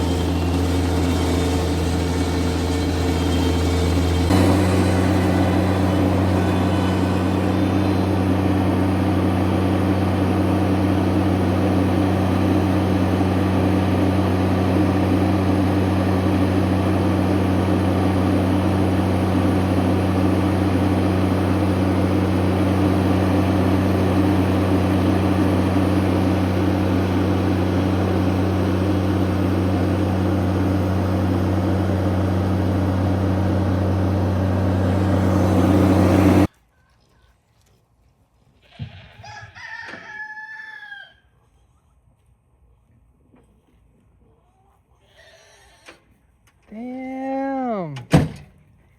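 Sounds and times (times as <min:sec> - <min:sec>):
diesel engine running: 0:00.0 - 0:36.5.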